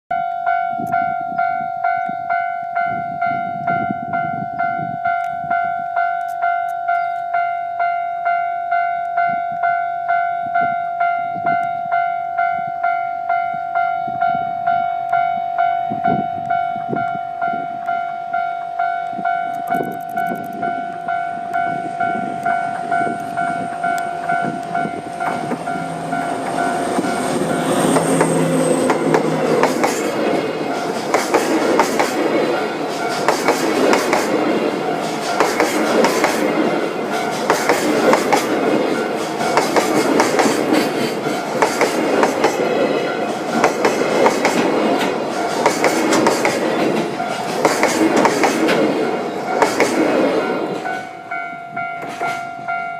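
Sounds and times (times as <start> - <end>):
level-crossing warning bell: 0.1 - 52.9
diesel freight train rumble: 15.6 - 52.9.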